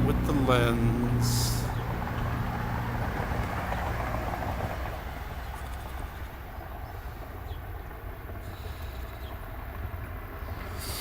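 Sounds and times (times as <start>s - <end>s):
low outdoor rumble: 0.0s - 11.0s
hiss: 8.4s - 9.3s, 10.5s - 11.0s.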